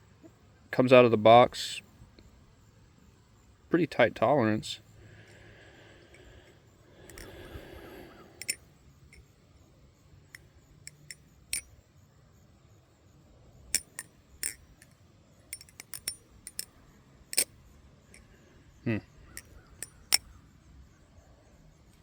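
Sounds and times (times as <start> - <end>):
butterfly knife clicking and clacking: 7.1 - 7.4, 8.4 - 8.6, 10.9 - 11.7, 13.8 - 16.7.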